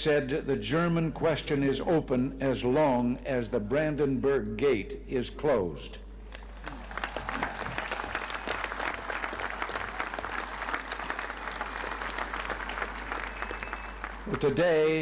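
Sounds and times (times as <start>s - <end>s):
crowd applauding: 6.5s - 15.0s.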